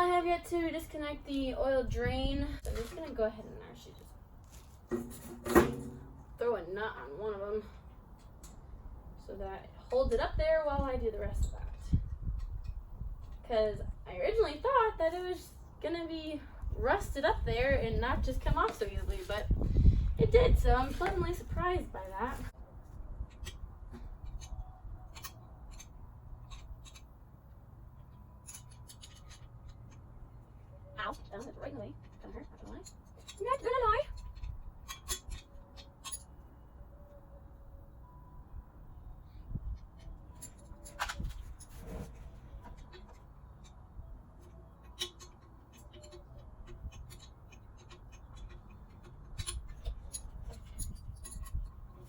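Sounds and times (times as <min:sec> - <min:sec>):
tools scraping engine parts: 0:04.4 - 0:06.3, 0:23.2 - 0:27.2, 0:28.0 - 0:30.2, 0:31.3 - 0:36.4, 0:39.8 - 0:52.0
hand tools clicking on bolts: 0:44.4 - 0:51.8.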